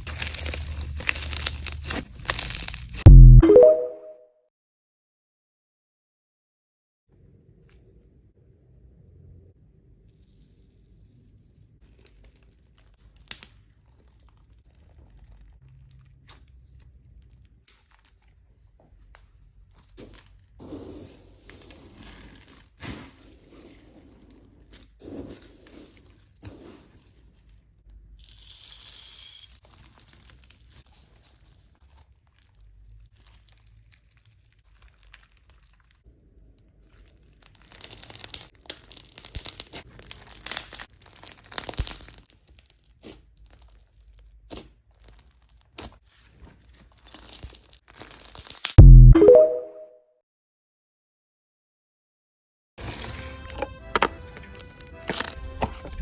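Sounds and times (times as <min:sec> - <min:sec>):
slime crackling and popping: 0:00.0 - 0:03.0, 0:11.8 - 0:16.6, 0:36.7 - 0:46.0, 0:46.9 - 0:48.8.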